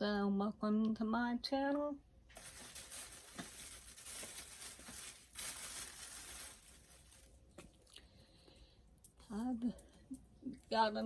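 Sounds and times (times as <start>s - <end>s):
packaging crinkling: 2.3s - 7.8s.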